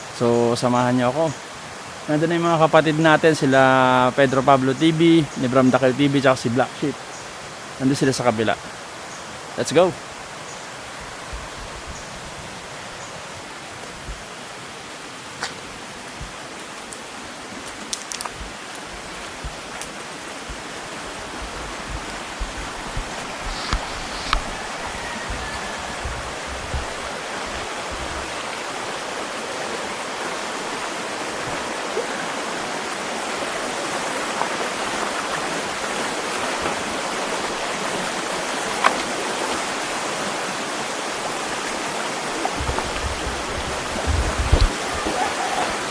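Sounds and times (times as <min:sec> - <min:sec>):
river water rushing: 0:00.0 - 0:45.9
sharp clicks and taps: 0:17.7 - 0:24.5.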